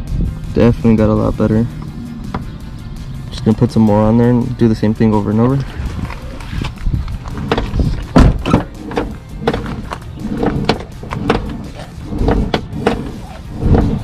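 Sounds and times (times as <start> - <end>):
background music: 0.0 - 14.0
car door opening and shutting: 5.9 - 14.0
door hinge thunks and pops: 7.5 - 10.0.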